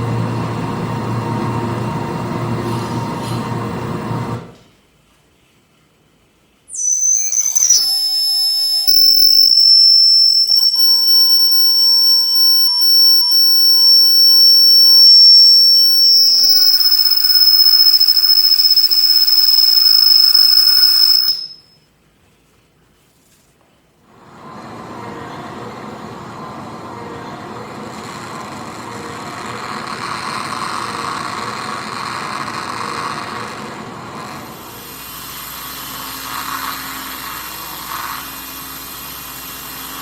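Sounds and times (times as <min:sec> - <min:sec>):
noisy rumble: 0:00.0 - 0:04.5
piercing high-pitched whistling tone: 0:06.7 - 0:21.8.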